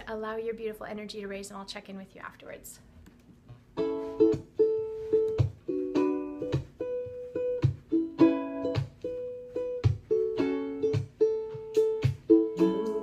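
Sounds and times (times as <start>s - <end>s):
ukulele strummed chords: 3.8s - 13.0s.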